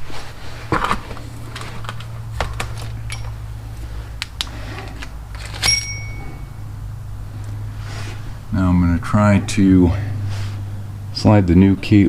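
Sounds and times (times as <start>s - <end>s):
steady low hum: 0.0s - 12.0s
metal tools clicking and clinking: 1.6s - 3.5s, 4.7s - 6.6s
ringing metal clink: 3.1s - 3.4s, 5.4s - 6.6s.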